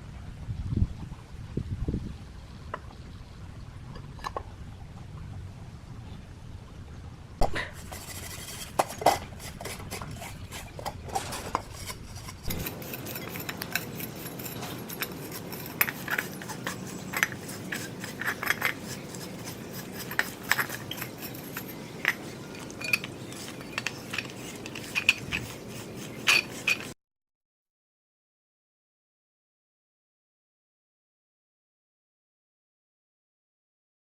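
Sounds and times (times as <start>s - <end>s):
low background hum: 0.0s - 27.0s
metal parts clinking: 7.7s - 26.9s.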